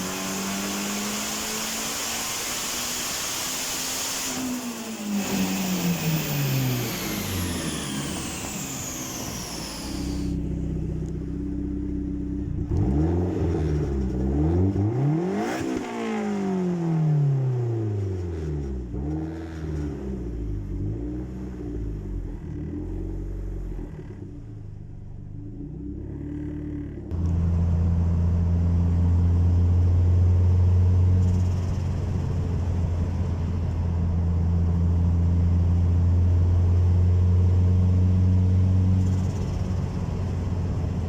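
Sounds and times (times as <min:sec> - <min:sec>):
turbo whine: 0:00.0 - 0:12.6
car engine revving: 0:00.0 - 0:33.0
car engine idling: 0:04.8 - 0:12.8.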